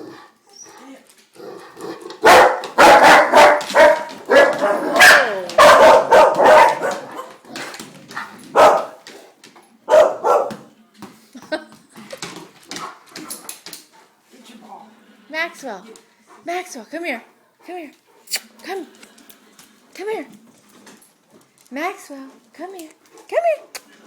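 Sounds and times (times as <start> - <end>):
dog barking loudly: 2.2 - 7.4, 8.5 - 9.0, 9.9 - 10.6.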